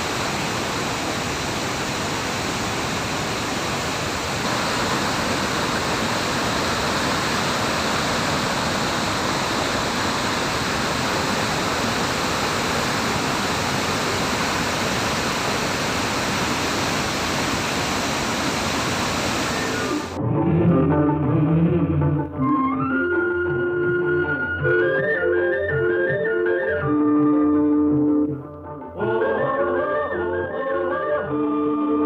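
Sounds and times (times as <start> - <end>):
waterfall rushing: 0.0 - 20.2
music: 20.2 - 32.0.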